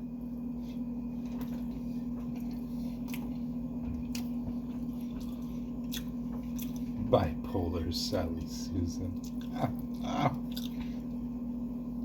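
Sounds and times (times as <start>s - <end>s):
low electrical hum: 0.0s - 12.0s
person chewing food: 0.5s - 7.0s, 9.2s - 11.2s.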